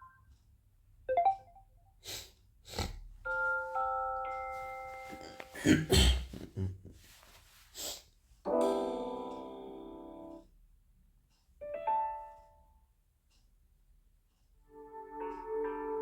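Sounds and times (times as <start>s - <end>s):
piano-like chord: 8.5s - 10.4s, 14.7s - 16.0s.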